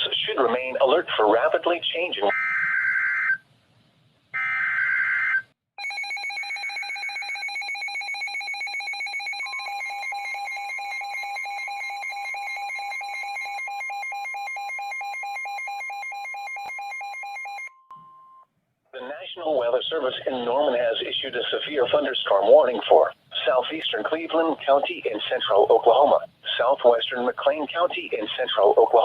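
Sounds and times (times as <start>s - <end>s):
rapid electronic alarm beeping: 5.8s - 17.8s
steady warning alarm tone: 5.8s - 17.9s.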